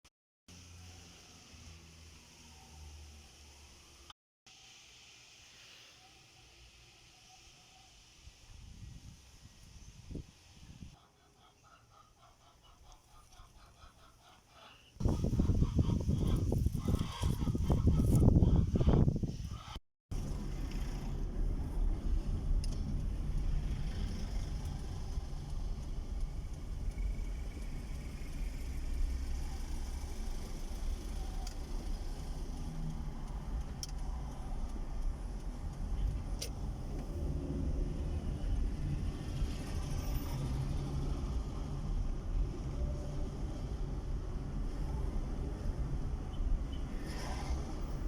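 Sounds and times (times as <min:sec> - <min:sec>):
vehicle engine running: 0:20.2 - 0:42.0.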